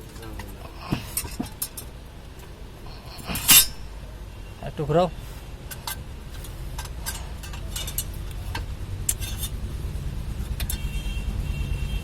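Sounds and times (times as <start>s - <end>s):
metal tools clinking: 0.0s - 4.0s, 5.6s - 9.8s, 10.5s - 10.9s
steady low rumble: 5.4s - 12.0s.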